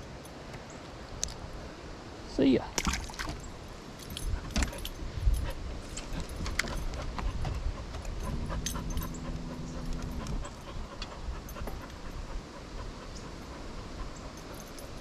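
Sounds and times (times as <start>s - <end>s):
steady low hum: 0.0s - 15.0s
dog panting: 4.2s - 15.0s.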